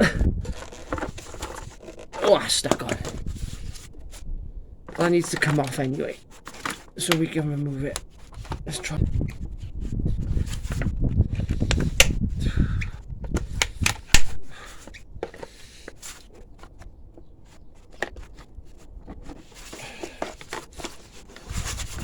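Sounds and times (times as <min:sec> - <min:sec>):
hands rustling: 0:13.2 - 0:22.0.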